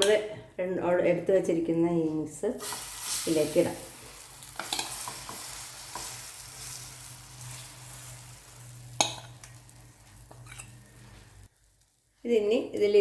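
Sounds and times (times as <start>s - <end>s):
batter sizzling in oil: 2.6s - 12.2s.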